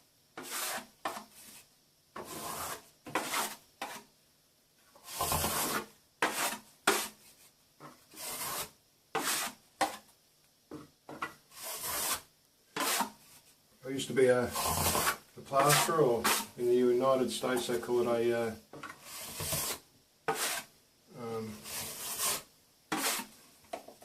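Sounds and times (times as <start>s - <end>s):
plastering knife scraping: 0.4s - 4.1s, 5.0s - 7.4s, 8.1s - 10.1s, 11.1s - 13.4s, 14.4s - 16.6s, 18.8s - 20.7s, 21.4s - 23.4s.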